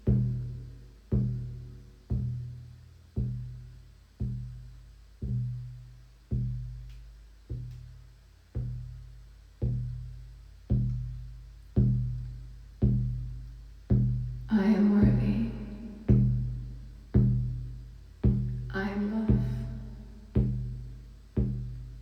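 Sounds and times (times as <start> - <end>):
drum beaten slowly: 0.0 - 22.0.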